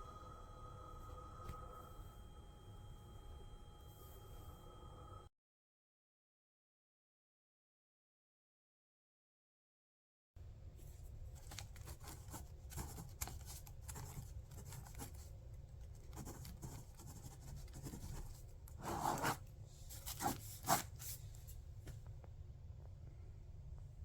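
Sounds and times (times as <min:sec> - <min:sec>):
low steady hum: 0:00.0 - 0:05.3, 0:10.4 - 0:24.0
rustling and scraping handling noises: 0:10.8 - 0:16.6, 0:17.4 - 0:22.1.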